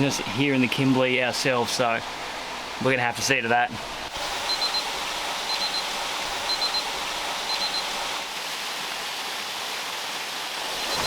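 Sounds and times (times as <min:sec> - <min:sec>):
waterfall rushing: 0:00.0 - 0:11.0.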